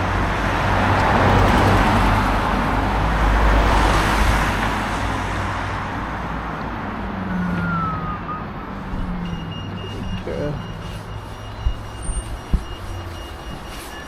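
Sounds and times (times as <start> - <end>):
short falling whistle: 7.5 - 8.6.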